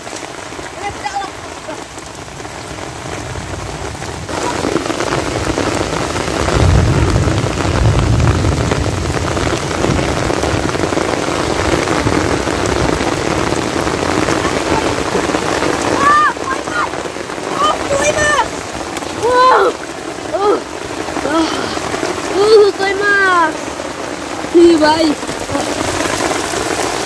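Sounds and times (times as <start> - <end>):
heavy rain falling: 0.0 - 27.0.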